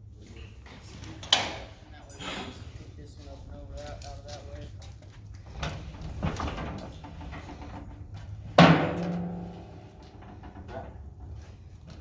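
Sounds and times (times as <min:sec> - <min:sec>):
light metal clattering: 0:02.4 - 0:11.9
heavy steel part clanging: 0:08.6 - 0:11.0.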